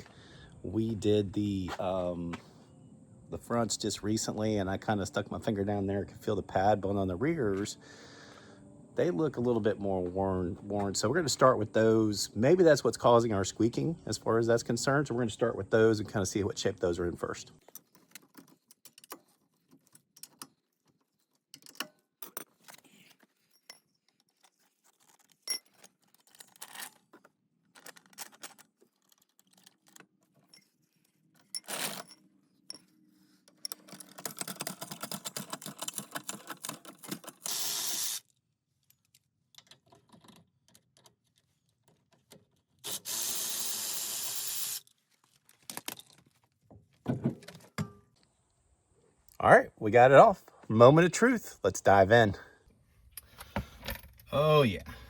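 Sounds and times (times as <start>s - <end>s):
metal tools clinking: 31.4s - 34.8s
power tool bursts: 37.4s - 38.2s, 42.8s - 44.8s.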